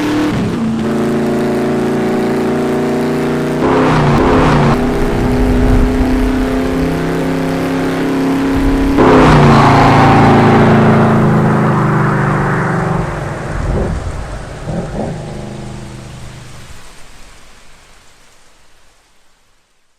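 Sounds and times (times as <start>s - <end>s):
car engine revving high: 0.0s - 17.0s
rushing noise surges: 2.9s - 18.9s.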